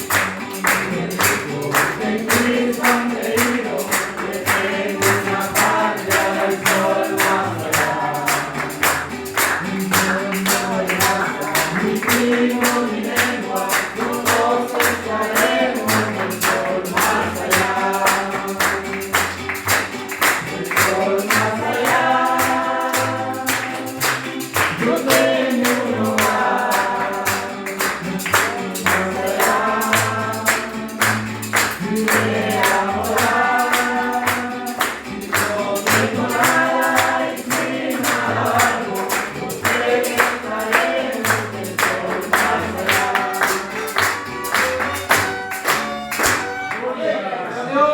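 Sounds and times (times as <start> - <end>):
bass: 0.0 - 46.7
tambourine beat: 0.0 - 46.7
person singing: 0.0 - 47.9
violins: 43.0 - 47.0.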